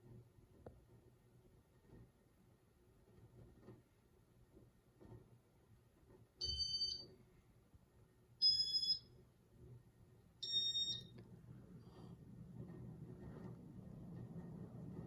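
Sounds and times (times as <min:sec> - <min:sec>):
faint low hum: 0:00.0 - 0:15.0
short electronic beeps: 0:08.4 - 0:09.0, 0:10.4 - 0:11.1.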